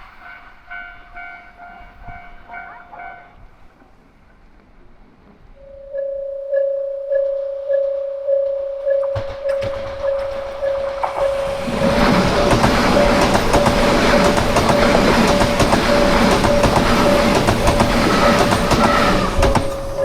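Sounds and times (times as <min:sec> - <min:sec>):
level crossing warning bell: 0:05.6 - 0:20.0
train wheels clattering over rail joints: 0:09.2 - 0:20.0.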